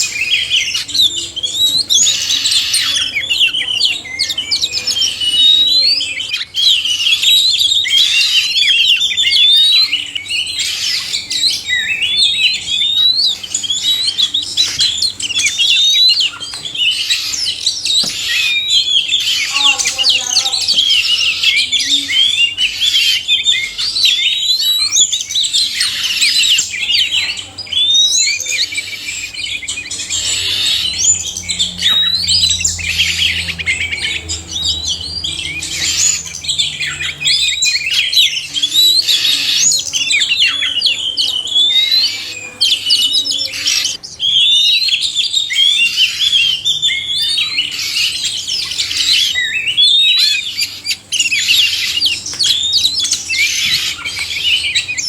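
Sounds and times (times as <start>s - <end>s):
birds singing whistled phrases: 0.0s - 55.0s.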